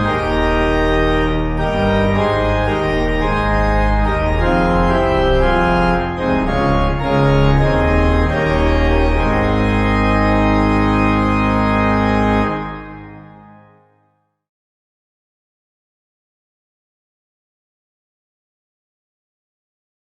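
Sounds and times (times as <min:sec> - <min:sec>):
organ held chord: 0:00.0 - 0:14.0.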